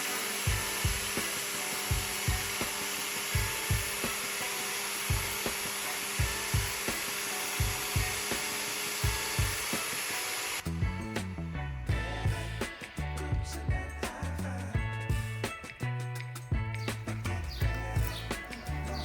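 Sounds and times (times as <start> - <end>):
power tool grinding: 0.0 - 10.8
music with low drum beat: 0.5 - 4.2, 5.0 - 9.8, 10.6 - 19.0.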